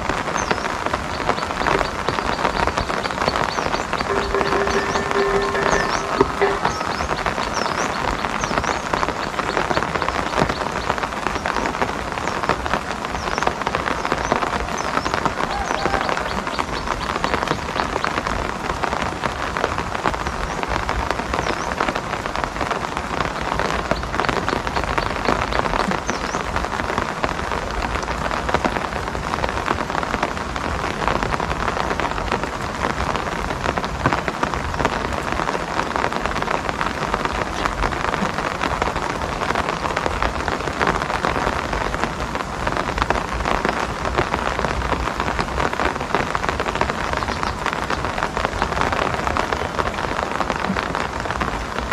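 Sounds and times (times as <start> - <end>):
steady rain patter: 0.0 - 51.9.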